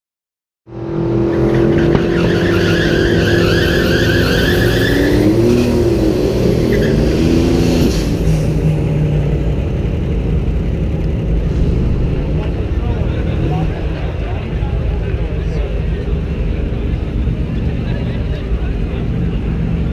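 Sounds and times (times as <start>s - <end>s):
road tyre and wind noise: 0.7s - 19.9s.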